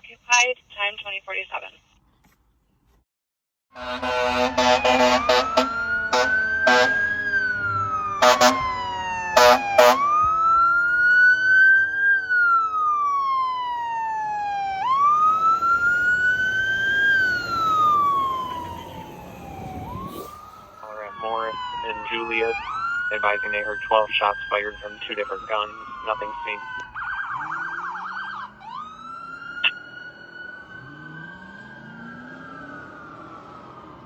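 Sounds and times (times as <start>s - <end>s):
fire engine air horn: 3.7s - 10.3s, 19.7s - 21.9s
lower siren tone: 3.8s - 34.0s
siren wailing: 3.8s - 34.0s.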